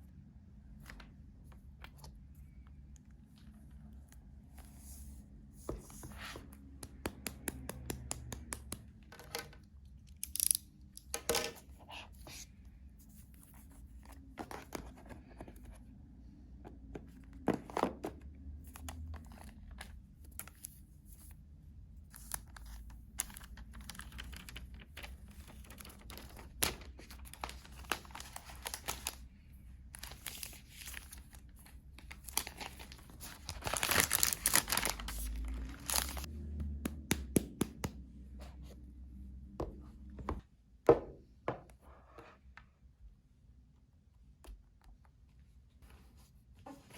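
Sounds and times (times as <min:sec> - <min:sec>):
packaging crinkling and tearing: 0:23.2 - 0:29.2, 0:29.9 - 0:36.3.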